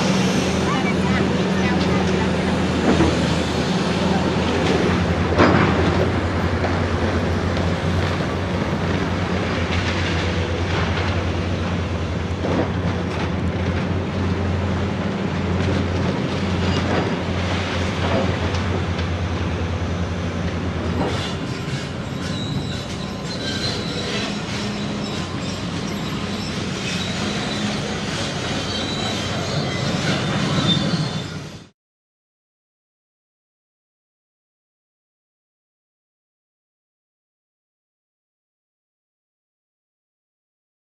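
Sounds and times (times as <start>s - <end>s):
diesel engine running: 0.0s - 29.0s
high metal squeals: 21.0s - 31.7s.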